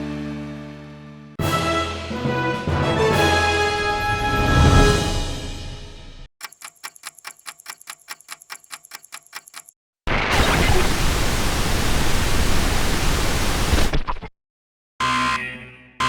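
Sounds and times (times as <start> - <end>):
rapid electronic ticking: 6.4 - 9.8
television static hiss: 10.4 - 13.9.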